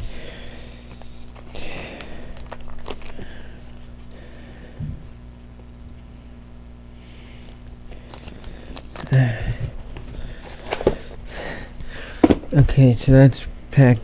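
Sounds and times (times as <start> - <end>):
steady electrical hum: 0.0 - 14.0
cards clicking and rustling: 0.9 - 3.4, 8.0 - 9.2, 10.0 - 11.2.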